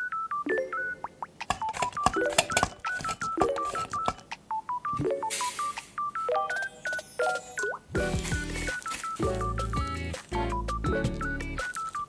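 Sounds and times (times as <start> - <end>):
sharp clicks and taps: 1.4 - 4.4
short electronic beeps: 2.9 - 7.8.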